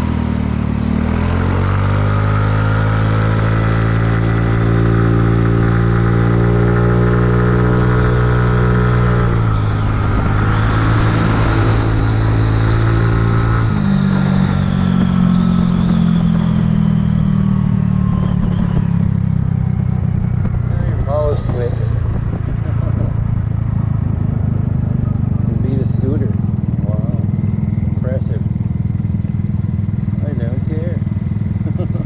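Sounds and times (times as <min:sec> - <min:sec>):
scooter engine while riding: 0:00.0 - 0:32.0.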